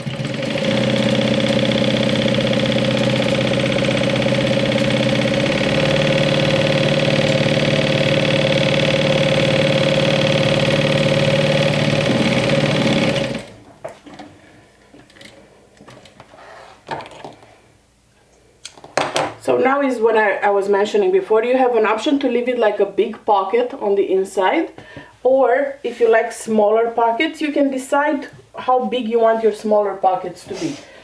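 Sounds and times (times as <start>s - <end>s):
sewing machine stitching: 0.0s - 13.7s.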